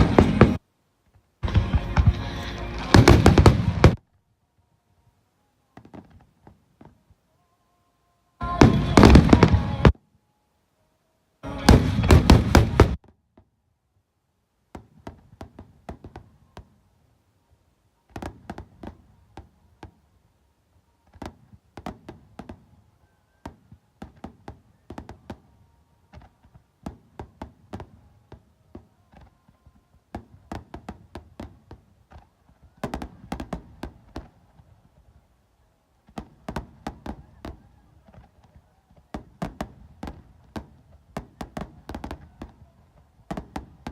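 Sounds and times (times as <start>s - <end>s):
fireworks bursting: 0.0s - 4.1s, 5.7s - 7.2s, 8.4s - 10.0s, 11.4s - 13.6s, 14.6s - 17.1s, 18.0s - 43.9s
music: 1.4s - 3.8s, 7.3s - 9.9s, 11.4s - 12.3s.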